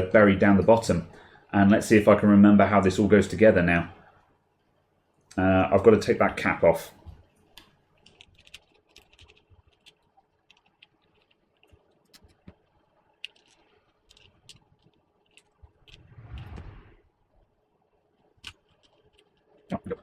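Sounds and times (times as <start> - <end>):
plastic parts and tools clicking: 7.1 - 16.1, 18.2 - 20.0
low rustle: 12.6 - 17.5.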